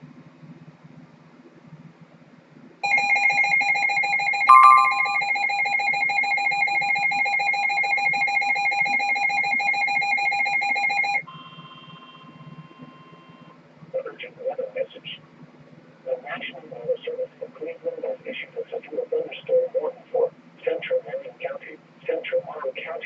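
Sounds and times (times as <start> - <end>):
high beep: 4.5 - 5.6
electronic alarm tone: 4.5 - 5.7.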